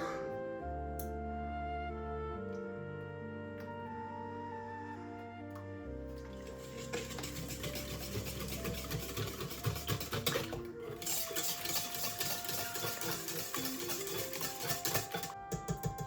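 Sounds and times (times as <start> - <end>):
soft background music: 0.0 - 16.0
electric kitchen mixer running: 6.5 - 16.0.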